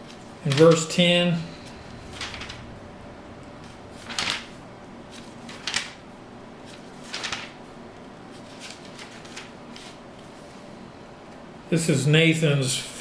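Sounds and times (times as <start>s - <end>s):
book pages turning: 4.0s - 6.0s, 6.7s - 7.6s, 8.3s - 10.0s.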